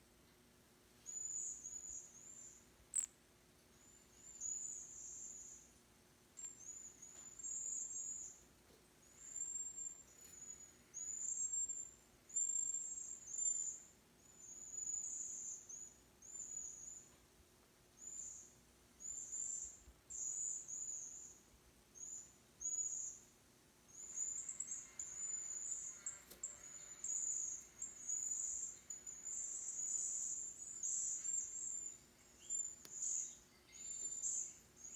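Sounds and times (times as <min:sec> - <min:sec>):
bird high-pitched calls: 0:24.0 - 0:34.9.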